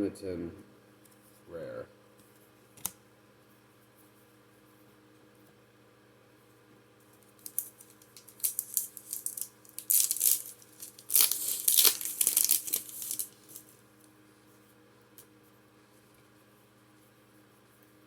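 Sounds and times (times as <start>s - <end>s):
foil wrapper crinkling and tearing: 7.2s - 13.8s.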